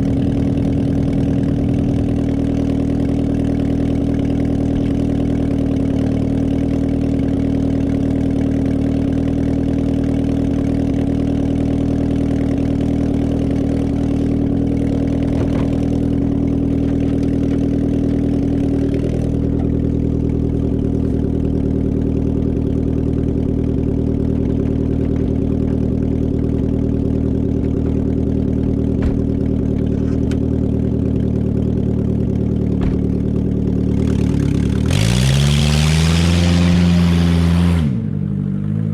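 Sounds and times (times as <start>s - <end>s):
engine idling: 0.0s - 38.9s.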